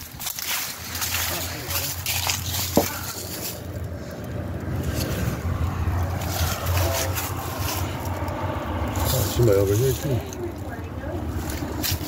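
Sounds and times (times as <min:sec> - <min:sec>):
wind rumbling on microphone: 0:03.1 - 0:12.0.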